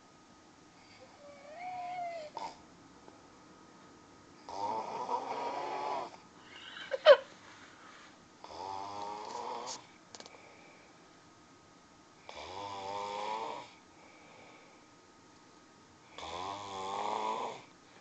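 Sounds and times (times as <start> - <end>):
man snoring: 4.5 - 6.2, 8.4 - 9.8, 12.3 - 13.8, 16.2 - 17.7
sharp rising squeak: 6.4 - 7.0.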